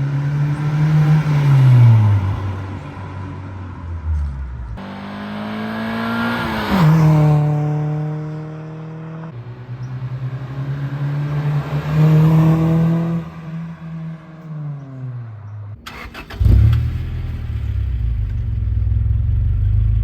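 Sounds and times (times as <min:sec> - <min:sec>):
car engine revving: 0:04.2 - 0:15.2.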